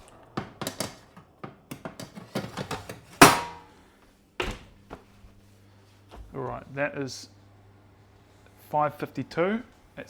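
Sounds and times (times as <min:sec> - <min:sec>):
metal oven tray clattering: 0:01.9 - 0:03.6.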